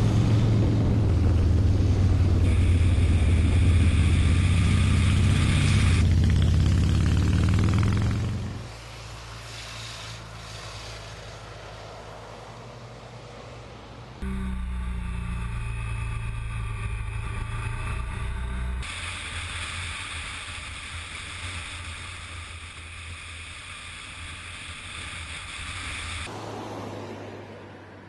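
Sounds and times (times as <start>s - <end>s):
motorcycle engine hum: 0.0s - 9.1s, 14.2s - 26.3s
wind and road noise hiss: 0.0s - 28.0s.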